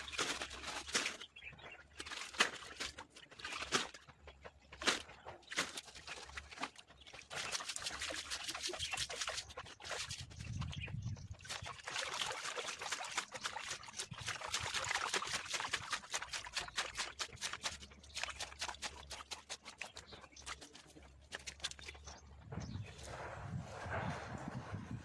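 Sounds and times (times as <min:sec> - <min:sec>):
water pouring and trickling: 0:00.0 - 0:04.0, 0:04.8 - 0:22.3
small splashes: 0:00.0 - 0:04.1, 0:04.7 - 0:22.2.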